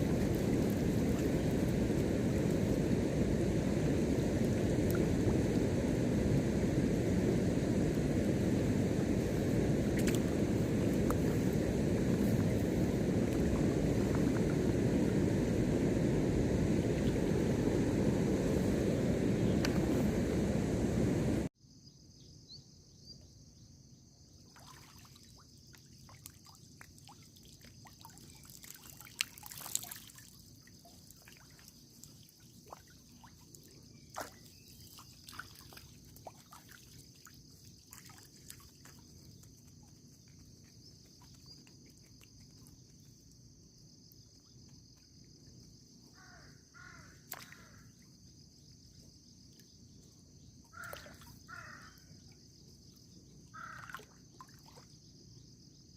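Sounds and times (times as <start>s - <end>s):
steady high-pitched hiss: 0.0s - 24.4s, 25.9s - 55.9s
crow cawing: 46.2s - 47.8s, 50.8s - 52.0s, 53.6s - 53.9s.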